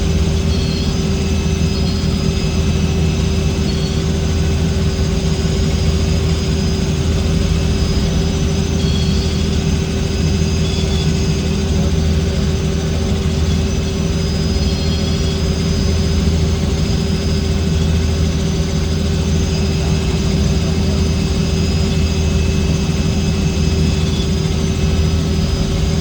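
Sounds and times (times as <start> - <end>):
constant whine: 0.0 - 26.0
helicopter engine and rotors: 0.0 - 26.0.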